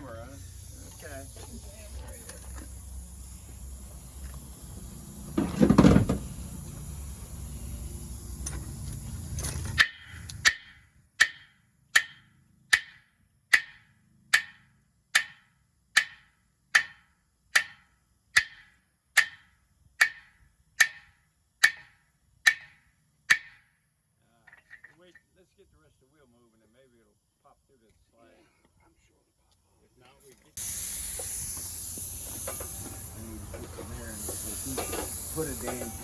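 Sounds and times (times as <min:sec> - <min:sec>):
hammer striking metal: 0:09.8 - 0:23.7.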